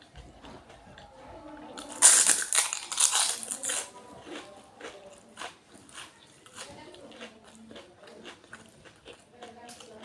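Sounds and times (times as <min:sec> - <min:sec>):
soft chewing clicks: 0:00.0 - 0:02.0, 0:03.6 - 0:10.0
crisp shells crunching when bitten: 0:01.8 - 0:08.5.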